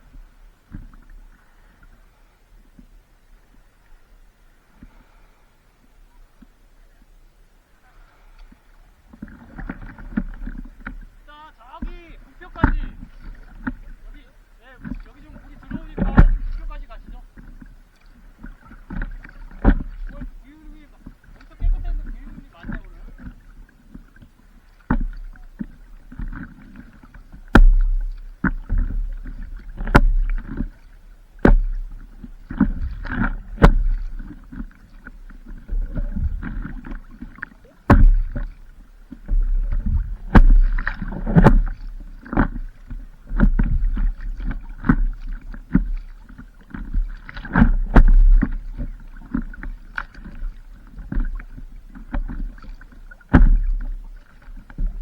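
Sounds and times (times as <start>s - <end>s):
paddle splashing in water: 0.0s - 55.0s.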